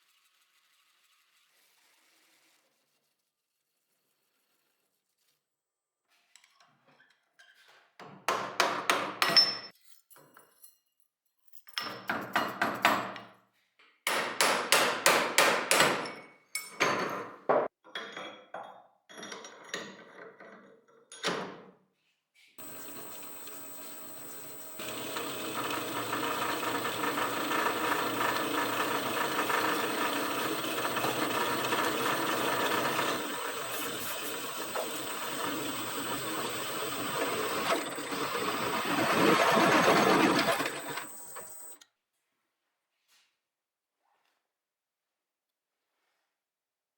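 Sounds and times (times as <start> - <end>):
drill press motor whining: 22.6 - 41.8.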